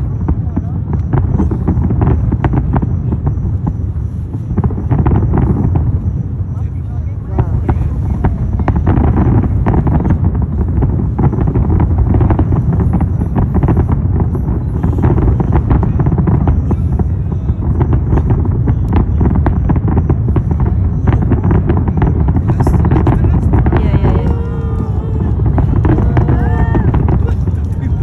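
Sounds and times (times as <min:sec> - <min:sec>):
wind rumbling on microphone: 0:00.0 - 0:28.0.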